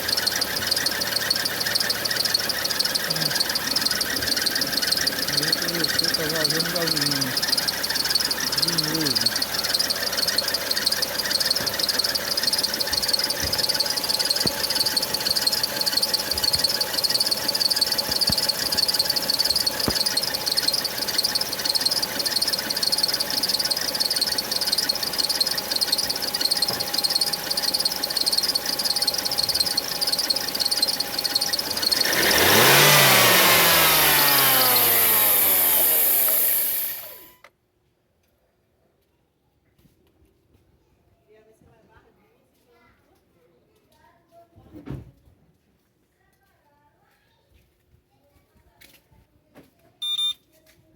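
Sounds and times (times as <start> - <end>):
car engine running: 0.0 - 37.4
drive belt squealing: 0.0 - 37.4.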